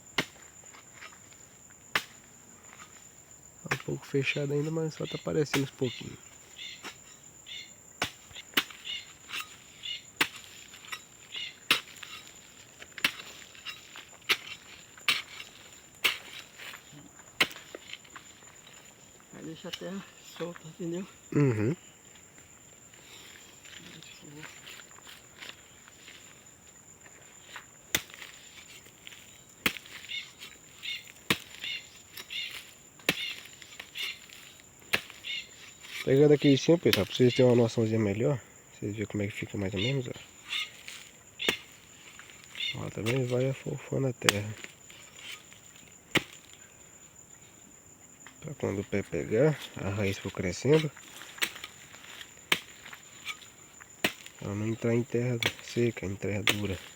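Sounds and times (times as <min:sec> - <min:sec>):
insect chirps: 0:00.0 - 0:56.9
digging tool chopping into soil: 0:01.9 - 0:02.2, 0:08.0 - 0:09.6, 0:10.2 - 0:11.1, 0:11.7 - 0:16.8, 0:17.4 - 0:18.0, 0:27.9 - 0:35.2, 0:44.2 - 0:46.5, 0:50.7 - 0:54.4, 0:55.4 - 0:56.9.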